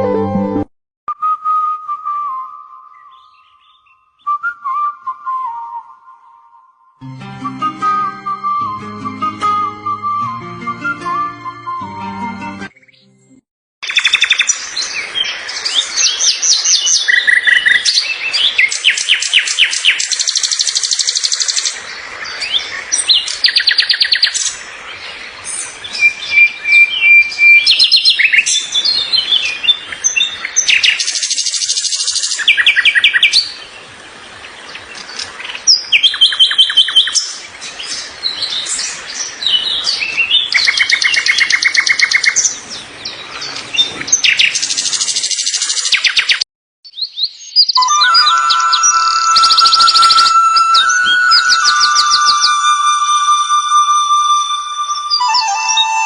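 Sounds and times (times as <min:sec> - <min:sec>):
songbird trills and chirps: 0:02.9 - 0:04.4, 0:25.5 - 0:33.6, 0:34.7 - 0:56.0.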